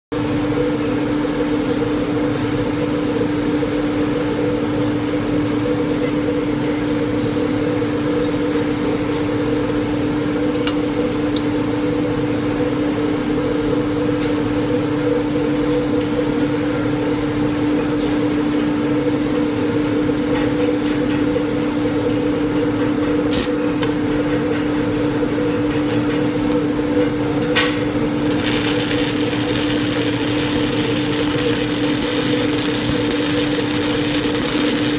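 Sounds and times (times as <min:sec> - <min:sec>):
welding arc crackling hiss: 0:23.2 - 0:23.9, 0:27.8 - 0:34.9
electric hum: 0:23.3 - 0:23.9, 0:27.3 - 0:34.9.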